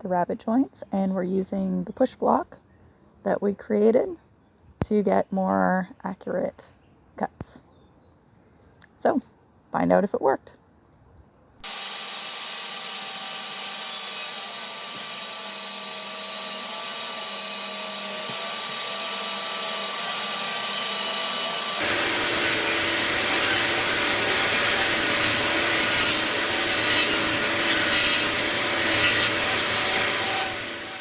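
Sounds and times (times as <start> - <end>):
table saw cutting wood: 11.6 - 31.0.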